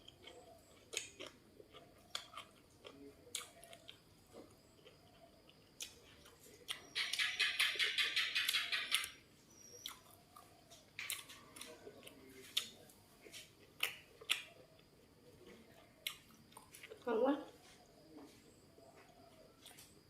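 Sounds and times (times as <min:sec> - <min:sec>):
crunchy chewing of fried food: 0:00.0 - 0:07.8, 0:08.4 - 0:20.0.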